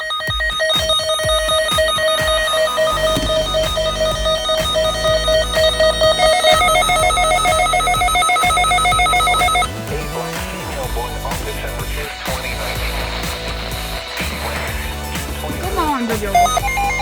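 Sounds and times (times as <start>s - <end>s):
weather radio alarm beeping: 0.0s - 9.8s, 14.6s - 17.0s.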